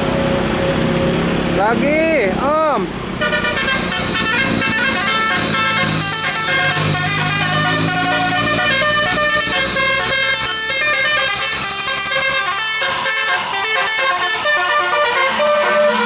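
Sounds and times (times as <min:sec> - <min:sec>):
low engine hum: 0:00.0 - 0:16.0
musical air horn melody: 0:03.2 - 0:16.0.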